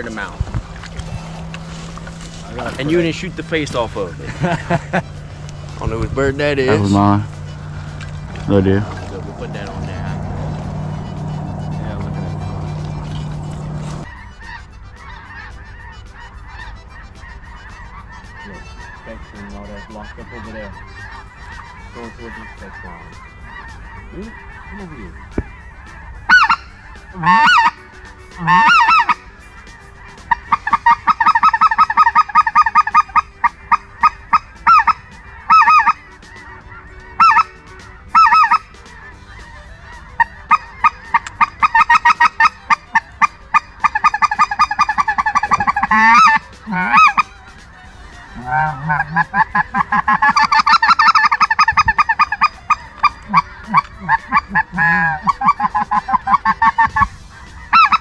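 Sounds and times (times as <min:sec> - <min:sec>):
waterfowl call honks and quacks: 0:00.0 - 0:58.0.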